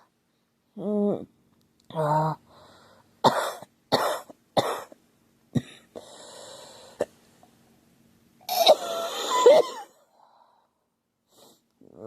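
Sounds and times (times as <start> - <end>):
girl coughing: 3.2 - 4.9, 8.5 - 9.9.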